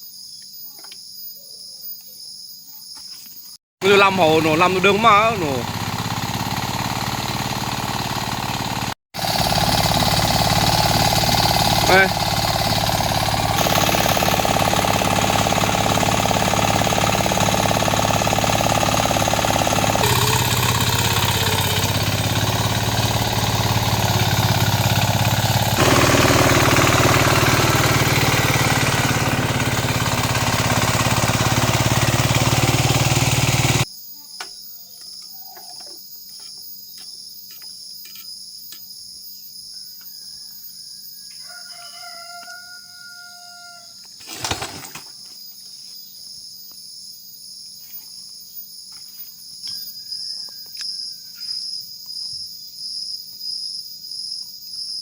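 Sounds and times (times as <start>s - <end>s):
tractor engine running: 3.8s - 33.9s
rooster crowing: 40.0s - 44.0s, 49.8s - 51.3s.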